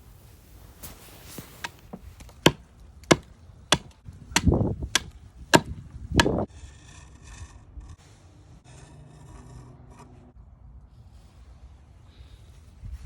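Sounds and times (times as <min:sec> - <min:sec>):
tool chopping into wood: 0:01.6 - 0:06.5.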